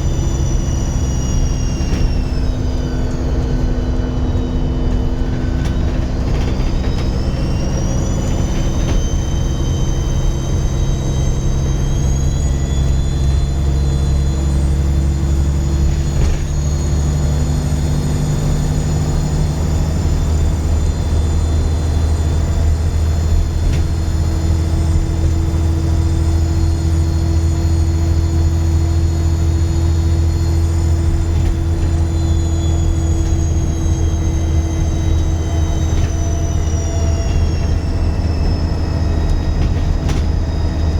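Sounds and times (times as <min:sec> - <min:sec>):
bus diesel engine pulling: 0:00.0 - 0:40.9
turbo whistle: 0:07.0 - 0:16.1, 0:19.9 - 0:39.6.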